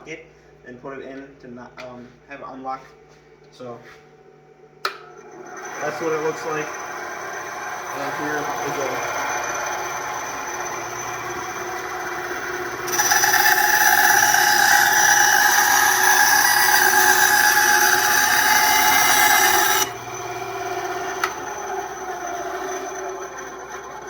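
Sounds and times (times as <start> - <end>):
band saw cutting wood: 5.3 - 24.0.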